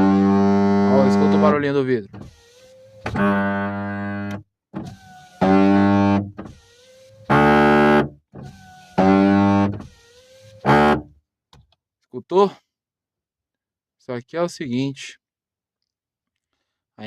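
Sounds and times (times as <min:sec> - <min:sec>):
electric window motor buzzing: 0:00.0 - 0:01.6, 0:02.2 - 0:11.1.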